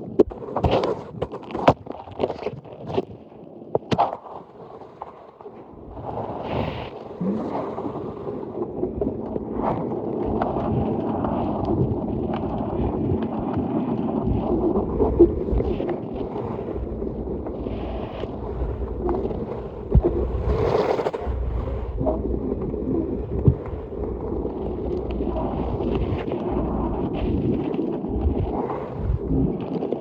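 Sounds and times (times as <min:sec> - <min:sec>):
wind buffeting microphone: 0:07.4 - 0:29.6.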